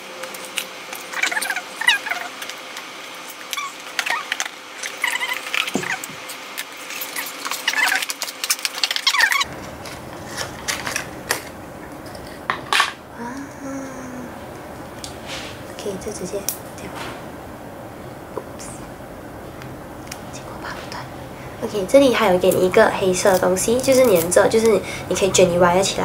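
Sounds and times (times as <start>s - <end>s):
plastic and cardboard crinkling: 3.2s - 12.4s.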